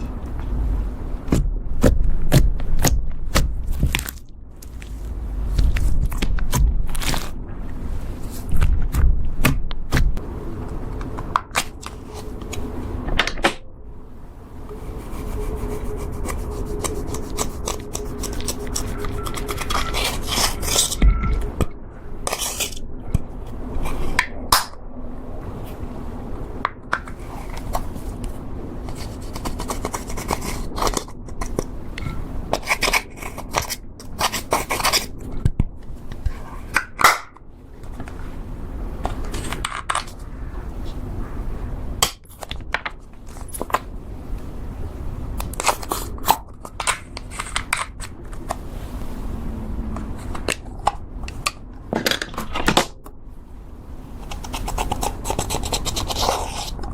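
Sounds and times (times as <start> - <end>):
slime squishing: 14.7 - 23.2.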